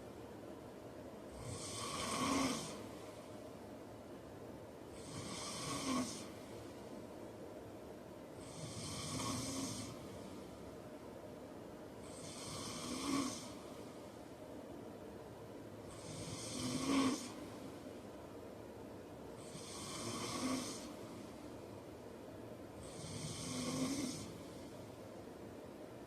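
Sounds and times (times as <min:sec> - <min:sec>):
man snoring: 0:01.3 - 0:02.8, 0:05.0 - 0:06.3, 0:08.4 - 0:10.1, 0:12.0 - 0:13.6, 0:15.9 - 0:17.4, 0:19.4 - 0:21.0, 0:22.8 - 0:24.5.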